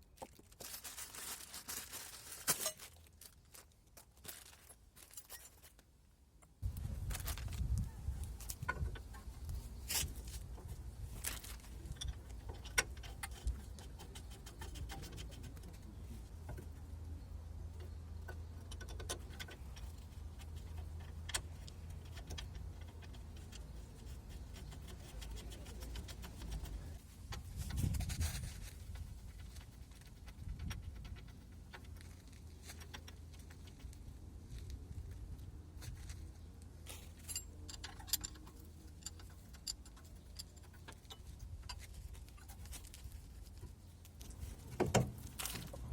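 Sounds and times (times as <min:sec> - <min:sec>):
metal tools clinking on steel: 0:02.4 - 0:03.0, 0:36.9 - 0:41.8.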